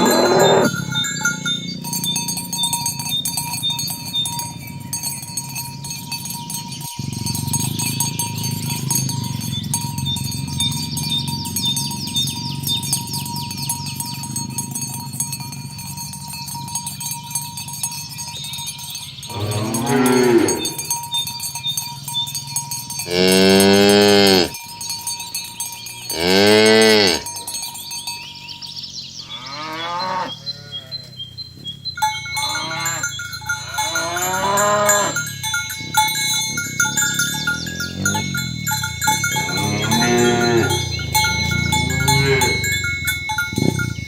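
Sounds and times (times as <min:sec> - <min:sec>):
cattle mooing: 0:00.0 - 0:02.3, 0:19.3 - 0:20.9, 0:23.0 - 0:24.6, 0:26.1 - 0:27.3, 0:29.2 - 0:31.1, 0:32.3 - 0:44.0
bell-like ringing tones: 0:00.0 - 0:44.0.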